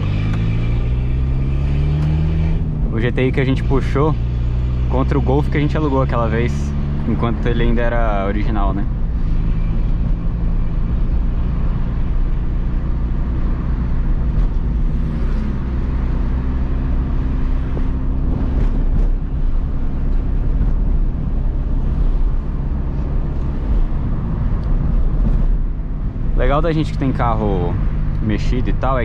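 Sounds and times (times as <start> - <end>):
car engine drone: 0.0 - 29.0.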